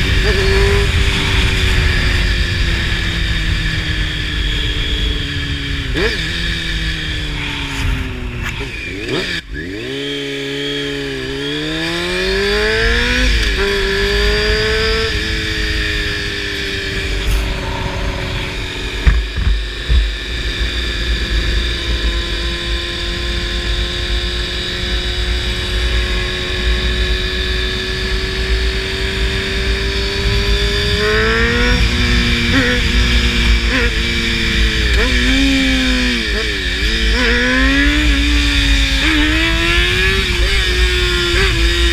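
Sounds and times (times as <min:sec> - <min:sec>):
wind on microphone: 0:00.0 - 0:08.8, 0:11.6 - 0:21.9
motorcycle engine revving: 0:00.0 - 0:41.9.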